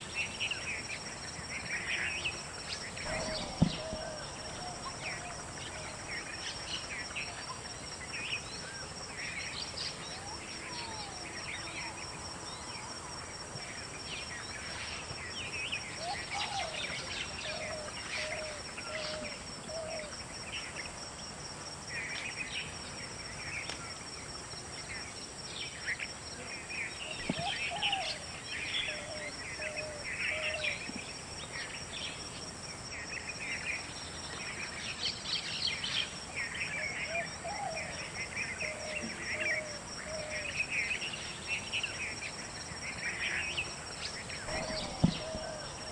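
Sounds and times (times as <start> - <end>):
small birds chirping: 1.6 - 12.8, 33.2 - 45.9
lower bird call: 3.0 - 6.3, 44.4 - 45.9.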